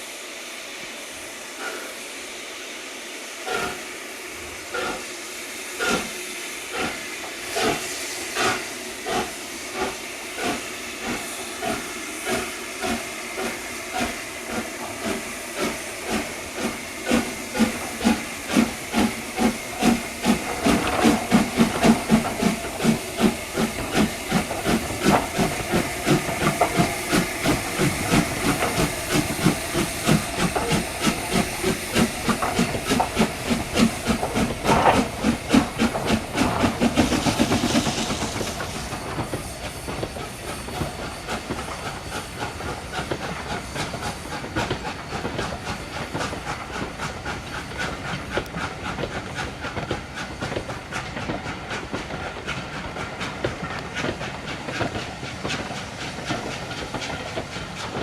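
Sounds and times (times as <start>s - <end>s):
hissing steam: 0.0s - 58.0s
steam locomotive exhaust chuffs: 0.0s - 58.0s
train clattering on rails: 5.8s - 58.0s.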